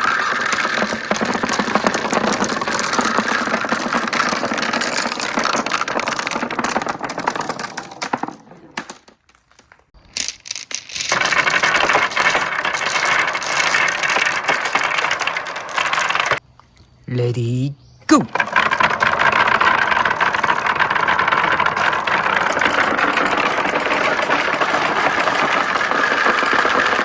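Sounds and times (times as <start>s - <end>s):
marbles rolling and clattering: 0.0s - 16.4s, 18.3s - 27.0s.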